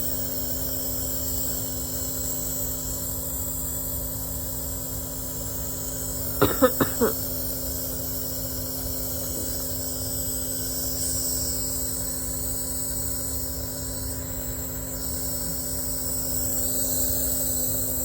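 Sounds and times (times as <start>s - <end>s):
compressor motor hum: 2.6s - 12.4s.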